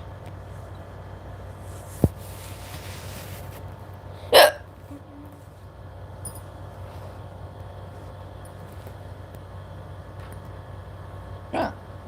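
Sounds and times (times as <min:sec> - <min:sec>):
low background hum: 0:00.0 - 0:12.0
person hiccuping: 0:04.3 - 0:05.3.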